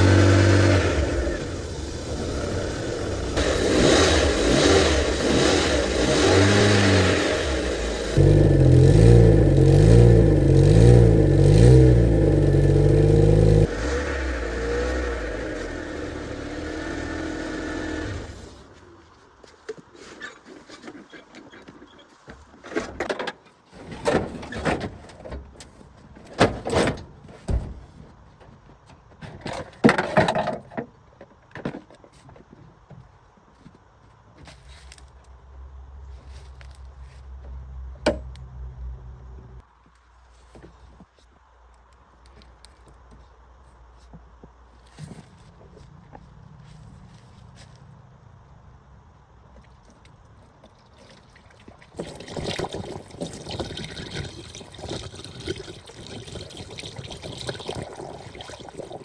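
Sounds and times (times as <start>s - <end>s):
car engine revving: 0.0s - 18.4s.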